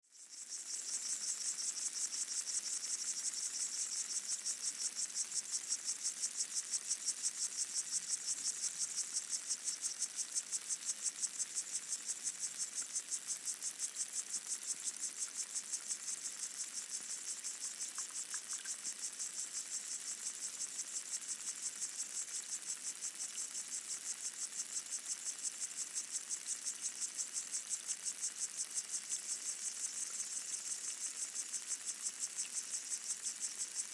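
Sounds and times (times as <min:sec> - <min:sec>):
underwater insects chirring: 0:00.1 - 0:33.9.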